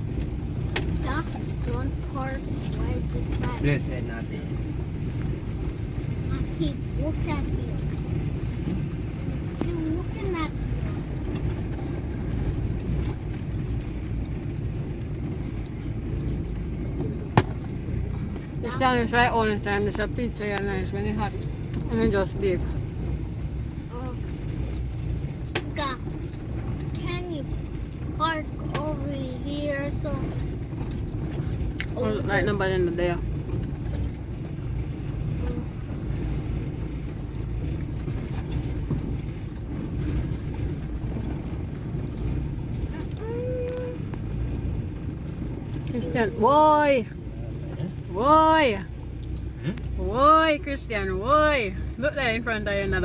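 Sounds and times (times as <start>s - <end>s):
car engine and road rumble: 0.0s - 53.0s.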